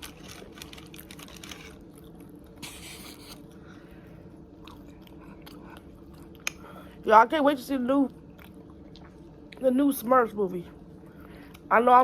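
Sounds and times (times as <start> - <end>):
chewing food: 0.0 - 3.6, 4.5 - 6.7, 8.3 - 9.6.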